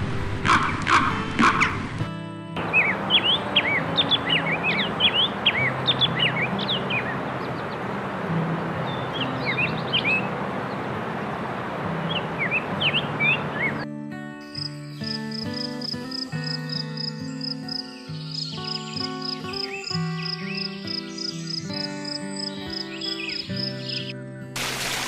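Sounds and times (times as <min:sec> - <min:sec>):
small birds chirping: 0:02.6 - 0:10.9, 0:12.0 - 0:13.8, 0:14.5 - 0:24.1.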